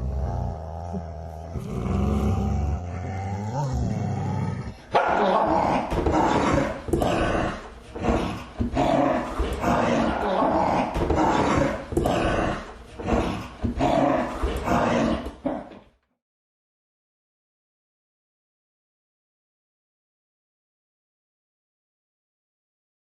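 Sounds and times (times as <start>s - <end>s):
dogs growling and snarling: 0.0s - 15.8s.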